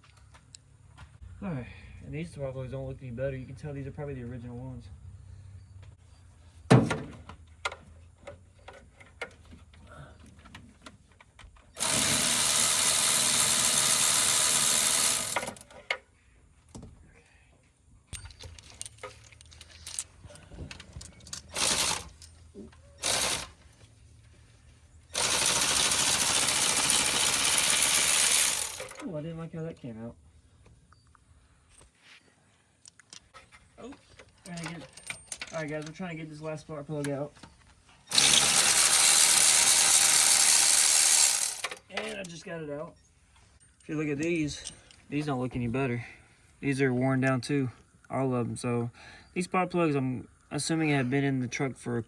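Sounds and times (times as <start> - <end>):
tools and sockets clinking: 8.2 - 16.0, 18.1 - 23.6, 32.9 - 36.1, 38.0 - 42.4, 43.6 - 45.0
electric ratchet running: 11.8 - 15.8, 21.4 - 22.2, 23.0 - 23.6, 25.1 - 29.0, 38.1 - 41.8.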